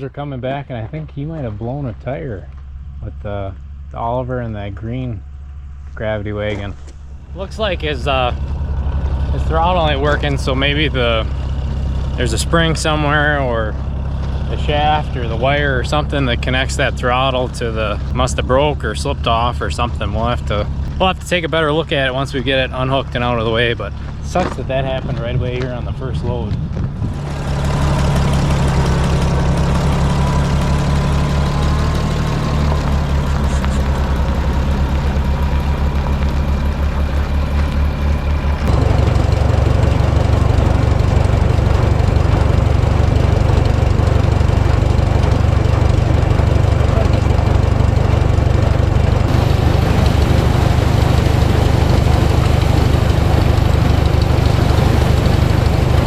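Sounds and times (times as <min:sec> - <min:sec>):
tractor engine running: 0:00.0 - 0:56.0.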